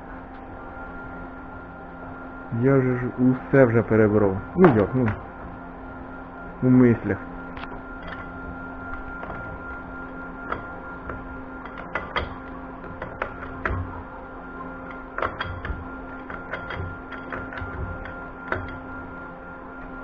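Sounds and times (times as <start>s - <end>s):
steady hum: 0.0s - 20.0s
metal parts clicking and tapping: 10.4s - 13.9s.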